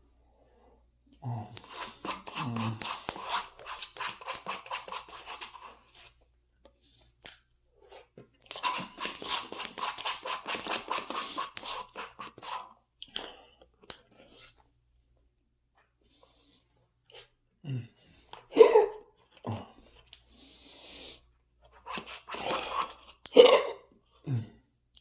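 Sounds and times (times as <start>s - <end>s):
person chewing food: 1.1s - 6.2s, 6.9s - 14.5s.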